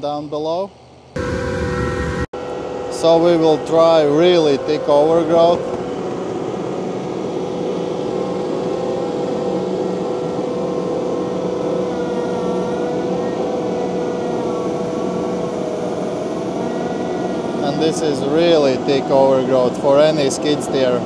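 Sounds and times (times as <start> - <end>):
track loader engine whining: 0.0 - 21.0.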